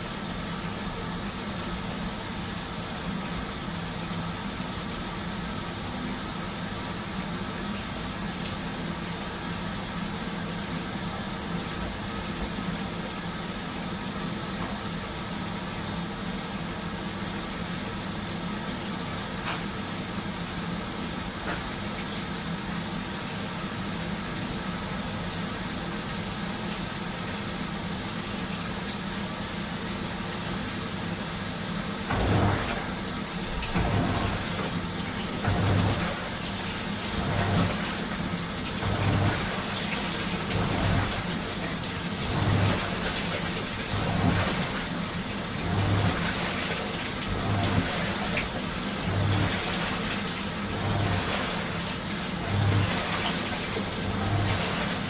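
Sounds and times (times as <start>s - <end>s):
washing machine motor hum: 0.0s - 55.0s
water sloshing in drum: 30.7s - 55.0s.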